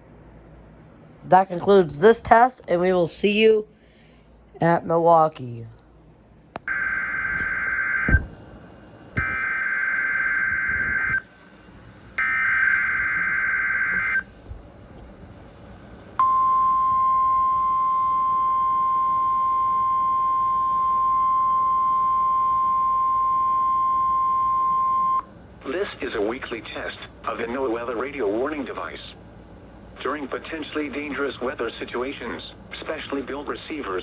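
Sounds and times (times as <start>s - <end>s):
steady warning alarm tone: 6.6s - 14.5s, 15.8s - 29.3s.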